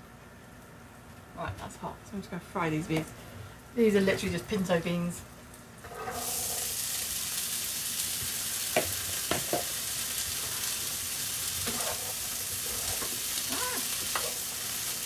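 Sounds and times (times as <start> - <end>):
beans sizzling in hot oil: 5.8 - 15.0.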